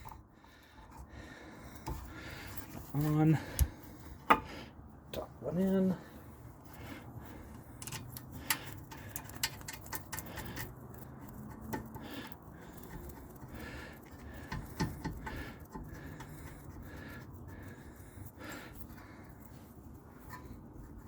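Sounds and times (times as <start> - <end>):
metallic clicks and clinks: 7.8 - 13.3.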